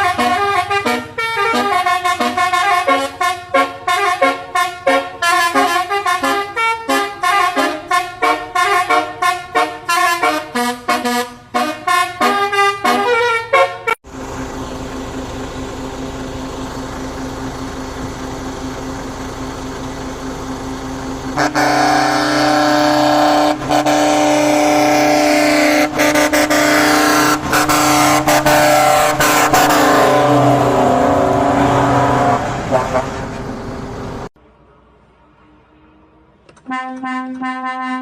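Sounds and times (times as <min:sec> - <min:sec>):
multi-tone horn blasts: 0:00.0 - 0:14.0, 0:21.4 - 0:33.2, 0:35.8 - 0:38.0
quiet steady horn tone: 0:00.0 - 0:14.0, 0:21.4 - 0:33.1, 0:34.8 - 0:38.0.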